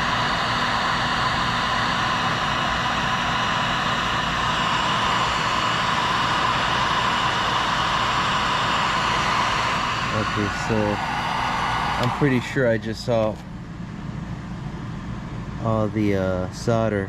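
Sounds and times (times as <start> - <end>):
heat gun blowing: 4.4 - 13.4.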